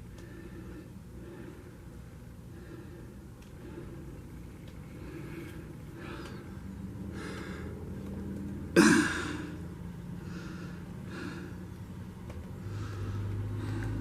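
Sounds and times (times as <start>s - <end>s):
person breathing softly: 0.0s - 7.9s, 10.1s - 12.0s, 12.6s - 14.0s
steady low hum: 0.0s - 14.0s.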